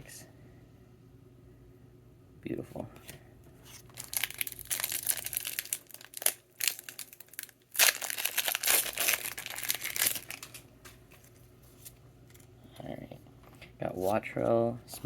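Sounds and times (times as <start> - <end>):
foil wrapper crinkling and tearing: 3.8 - 11.3.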